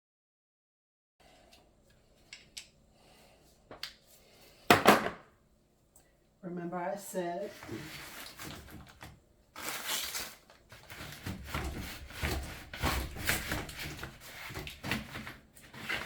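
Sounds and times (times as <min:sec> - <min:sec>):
air filter rustling and scraping: 0:07.3 - 0:16.0.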